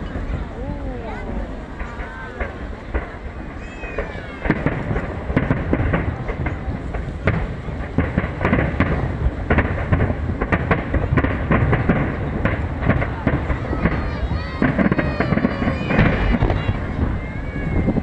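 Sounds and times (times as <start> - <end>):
fireworks bangs and crackles: 0.0 - 18.0
firework whistle: 13.4 - 18.0.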